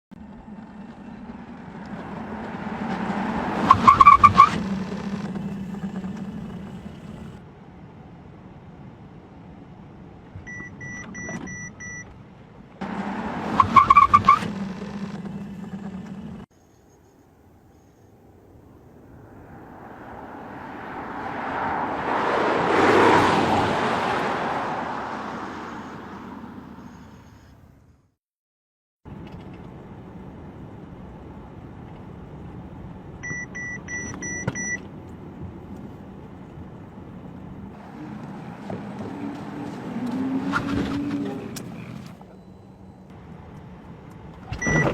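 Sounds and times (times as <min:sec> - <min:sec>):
vehicle running hum: 0:00.1 - 0:16.5, 0:18.2 - 0:27.8, 0:29.1 - 0:44.9
electronic warning beeps: 0:10.5 - 0:12.1, 0:33.2 - 0:34.8, 0:44.6 - 0:44.9.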